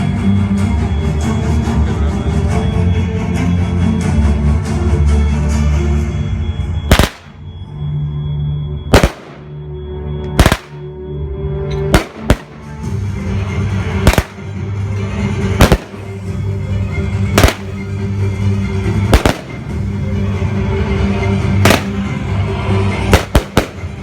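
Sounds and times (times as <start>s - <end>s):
background music low notes: 0.0s - 24.0s
fireworks bangs: 6.9s - 7.4s, 9.0s - 9.5s, 10.4s - 10.8s, 11.9s - 12.9s, 14.0s - 14.6s, 15.6s - 16.3s, 17.4s - 18.0s, 19.1s - 20.0s, 21.6s - 22.2s, 23.1s - 24.0s.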